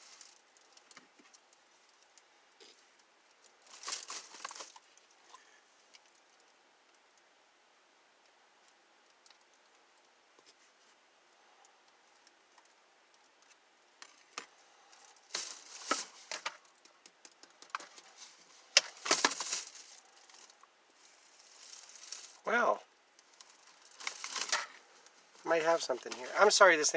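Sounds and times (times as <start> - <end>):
plastic hose crinkling: 0.0 - 6.5, 12.1 - 26.7.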